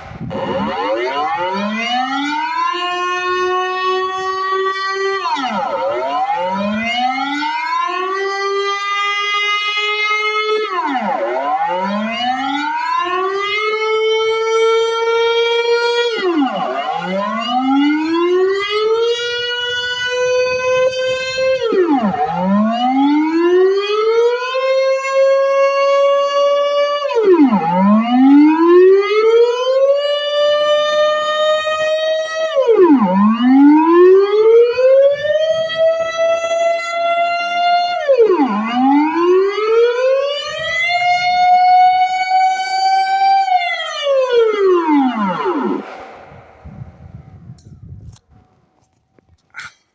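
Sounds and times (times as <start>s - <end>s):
air raid siren wailing: 0.0s - 48.0s.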